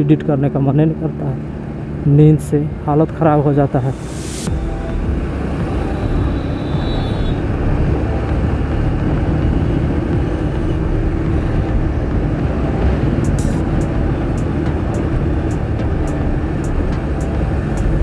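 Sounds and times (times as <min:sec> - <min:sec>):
wind and road noise: 0:00.0 - 0:18.0
motorcycle engine running: 0:04.0 - 0:18.0.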